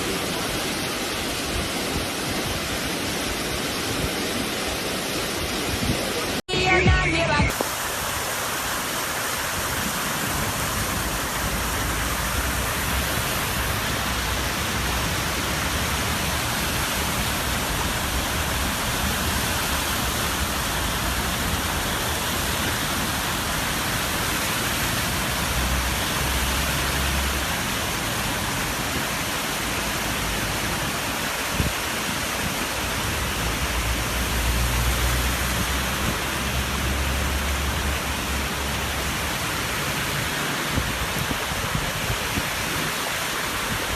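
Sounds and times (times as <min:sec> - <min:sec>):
heavy rain falling: 0:00.0 - 0:43.9.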